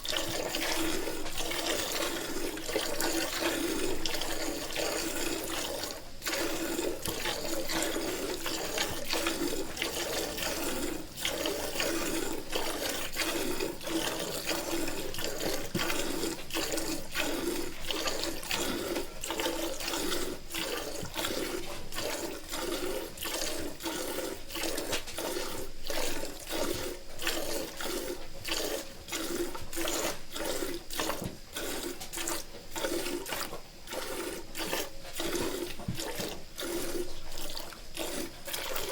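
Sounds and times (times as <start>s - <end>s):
milk squirting into pail: 0.0s - 38.9s.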